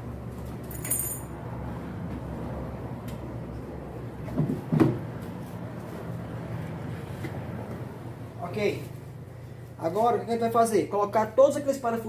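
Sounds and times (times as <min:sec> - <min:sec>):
steady low hum: 0:00.0 - 0:12.0
knocks on washing machine parts: 0:04.4 - 0:05.0.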